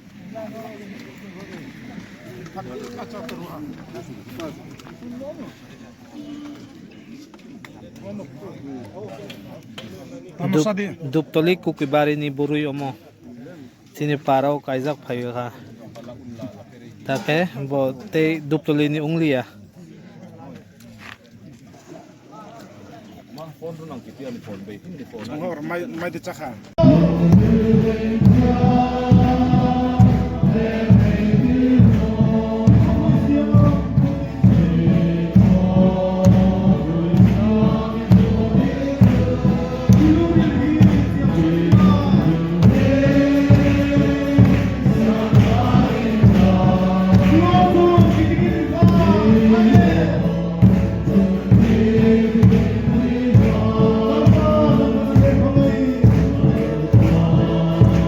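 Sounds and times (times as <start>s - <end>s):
choir singing gospel song: 26.8s - 58.0s
steady beat: 26.8s - 58.0s.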